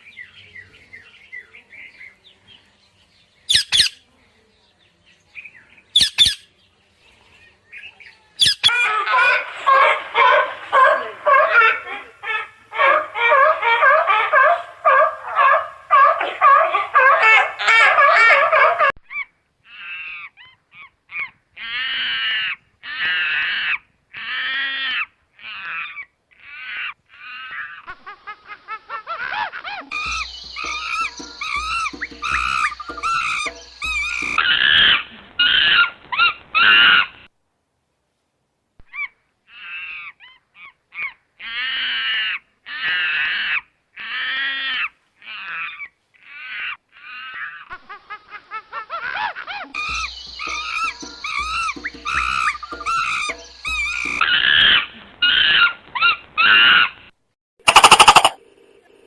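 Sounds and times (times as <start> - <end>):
bird harsh calls: 3.5 - 4.0, 6.0 - 6.5, 8.4 - 28.0, 29.1 - 37.1, 49.8 - 57.0, 57.7 - 58.4
loud wavering call: 57.7 - 58.4.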